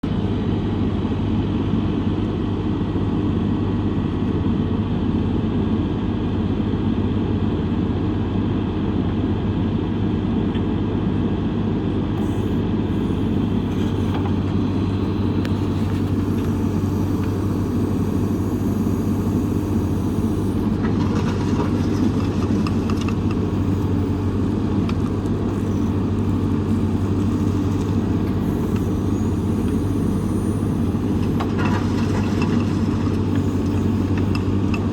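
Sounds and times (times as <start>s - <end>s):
diesel engine idling: 12.2s - 34.9s
faint rattles and clicks: 12.2s - 34.9s.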